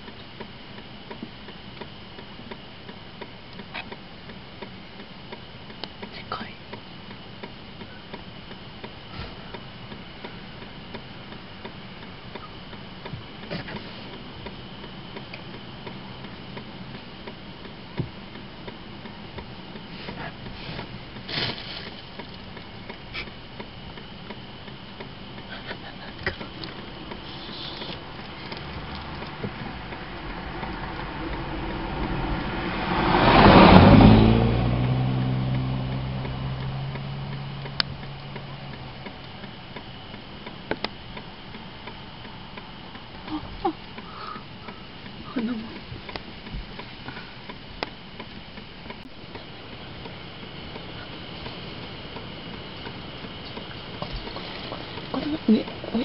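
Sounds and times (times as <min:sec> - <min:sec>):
car passing by: 0:28.6 - 0:38.4.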